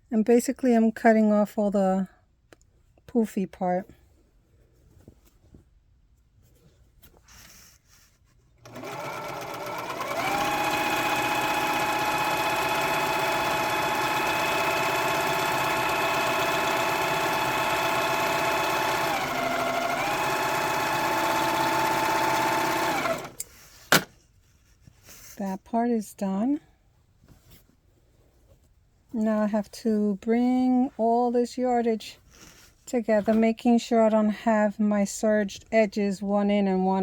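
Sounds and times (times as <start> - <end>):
serger stitching fabric: 7.3 - 24.2.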